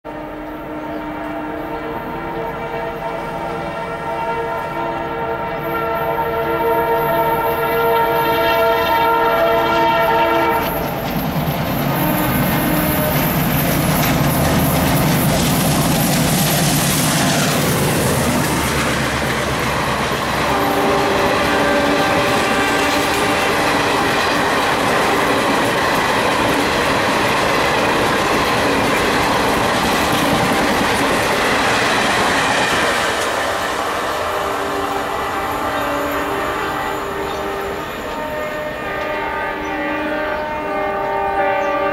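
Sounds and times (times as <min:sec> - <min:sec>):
train coaches rattling over rails: 0:00.9 - 0:41.9
diesel locomotive engine throb: 0:06.3 - 0:39.8.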